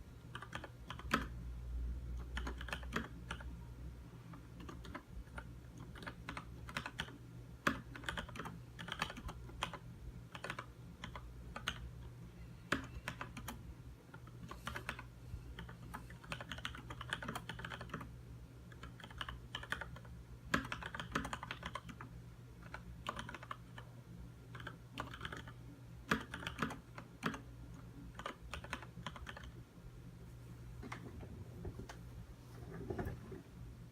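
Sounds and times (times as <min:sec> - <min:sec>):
faint low hum: 0:00.0 - 0:33.9.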